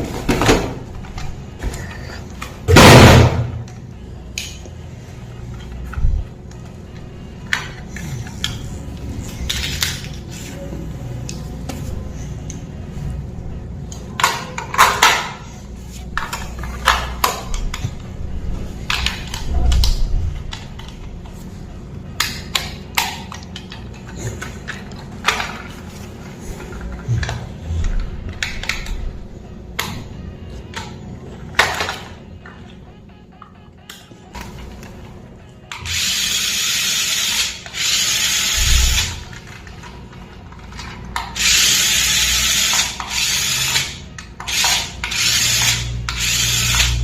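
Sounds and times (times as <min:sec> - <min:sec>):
toy car and packaging clattering: 0:09.3 - 0:10.6, 0:14.1 - 0:15.6, 0:22.2 - 0:29.1, 0:35.7 - 0:47.0.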